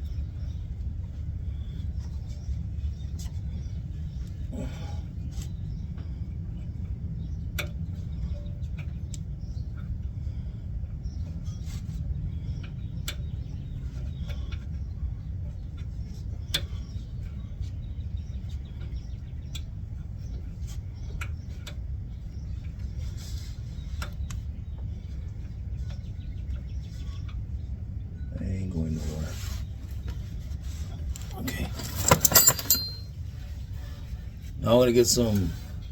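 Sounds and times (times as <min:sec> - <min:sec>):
steady low rumble: 0:00.0 - 0:35.9
hand tools clinking on metal: 0:31.2 - 0:33.2.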